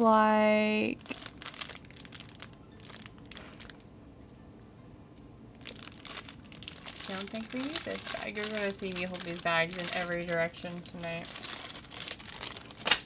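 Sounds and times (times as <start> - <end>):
plastic bags crinkling: 1.0 - 3.9, 5.6 - 13.0.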